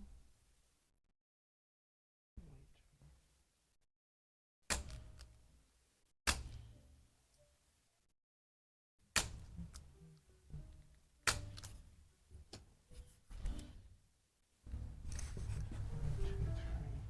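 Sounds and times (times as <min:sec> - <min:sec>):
sharp joint cracks: 0:11.2 - 0:11.9.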